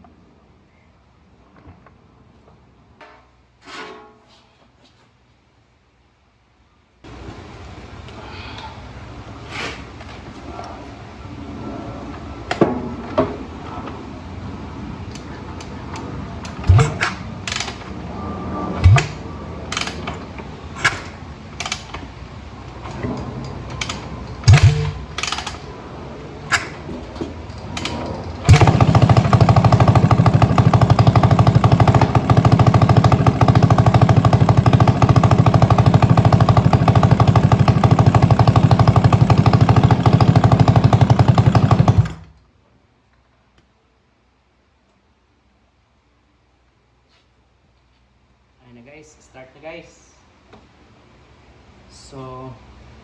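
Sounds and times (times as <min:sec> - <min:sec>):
dirt bike engine running: 0:16.6 - 0:17.6, 0:18.8 - 0:19.9, 0:23.8 - 0:25.6, 0:28.4 - 0:42.3.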